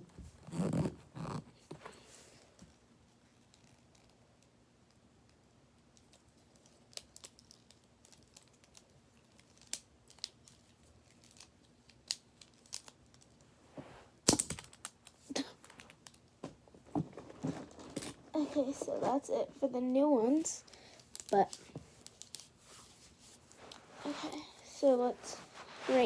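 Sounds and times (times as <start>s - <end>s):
plastic toy clatter: 16.9s - 19.0s.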